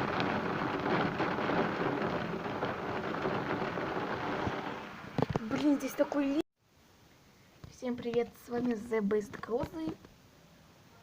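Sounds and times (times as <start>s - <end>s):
heavy rain pouring: 0.0s - 6.4s.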